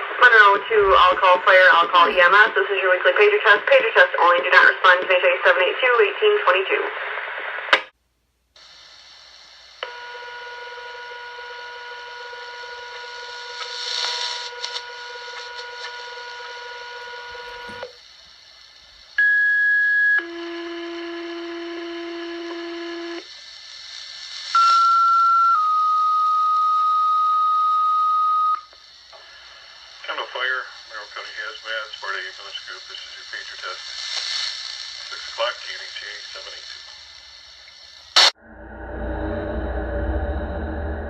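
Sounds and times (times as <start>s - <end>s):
two-tone pages: 17.2s - 17.9s.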